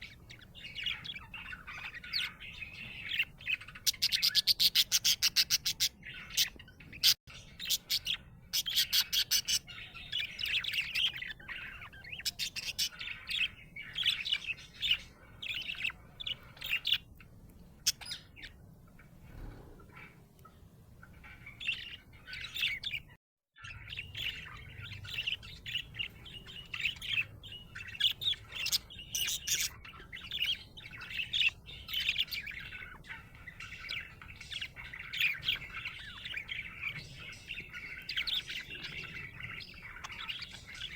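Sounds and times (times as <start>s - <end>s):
budgerigar chirping: 0.0s - 17.2s, 17.8s - 19.0s, 21.0s - 40.9s.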